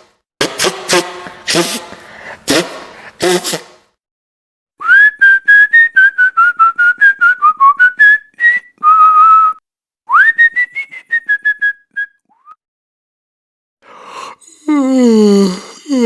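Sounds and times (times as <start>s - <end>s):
person whistling a tune: 4.8s - 12.6s.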